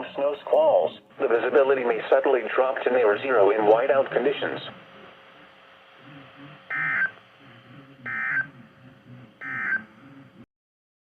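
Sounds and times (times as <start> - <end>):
digital data tone bursts: 6.7 - 7.2, 8.0 - 8.6, 9.4 - 10.0.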